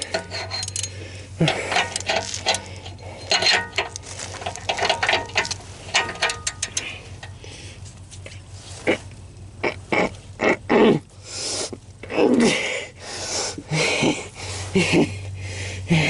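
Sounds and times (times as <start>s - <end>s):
ratchet wrench clicking: 0.0s - 7.4s
steady low hum: 0.0s - 16.0s.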